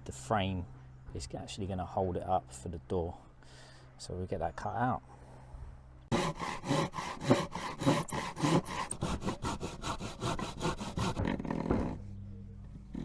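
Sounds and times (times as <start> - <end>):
hand saw cutting wood: 6.1 - 11.7.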